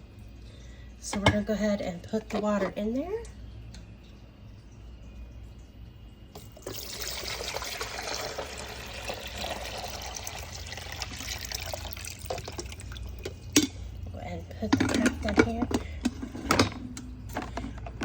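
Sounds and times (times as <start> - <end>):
water pouring and splashing: 6.4 - 13.6.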